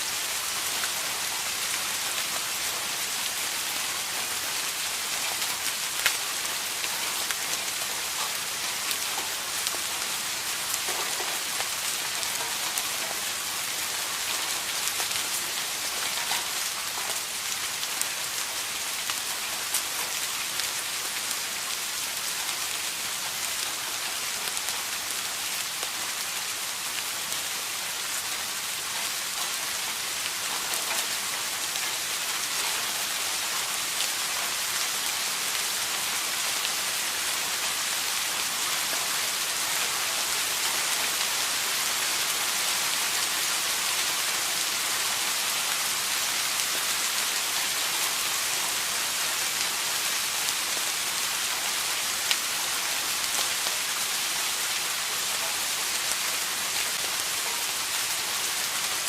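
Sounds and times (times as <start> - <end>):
steady rain falling: 0.0 - 59.0.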